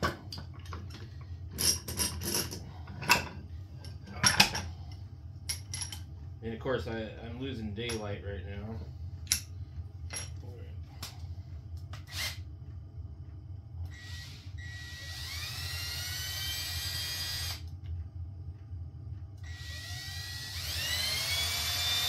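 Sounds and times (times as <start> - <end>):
electric drill spinning: 12.0 - 12.4, 13.9 - 17.7, 19.4 - 22.0.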